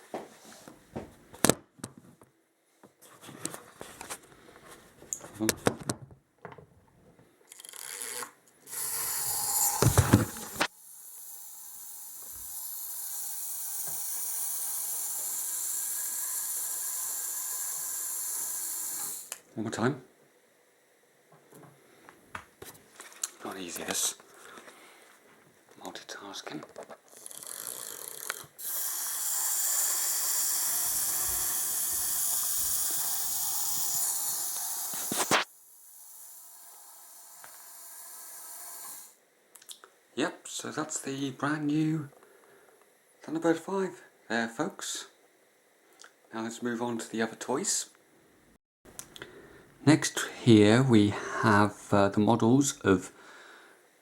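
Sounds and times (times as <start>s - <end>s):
plastic toy ratchet clatter: 7.5s - 19.3s, 27.1s - 39.1s
steady high hiss: 28.6s - 39.3s, 48.9s - 54.0s.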